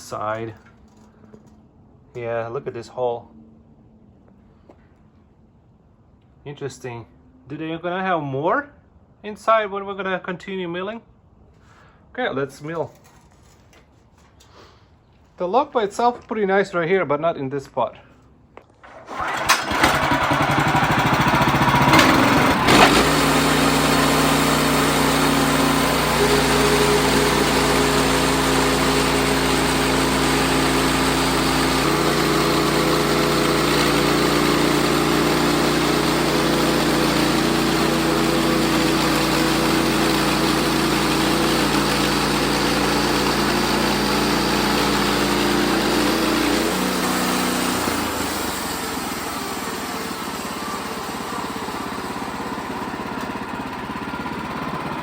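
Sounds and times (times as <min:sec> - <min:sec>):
sawmill engine running: 0:18.8 - 0:55.0
sawmill sawing a log: 0:18.9 - 0:55.0.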